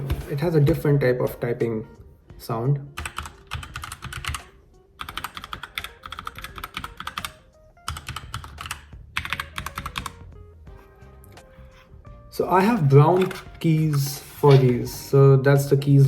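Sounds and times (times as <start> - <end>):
mechanical keyboard typing: 3.0 - 10.2, 13.0 - 13.5.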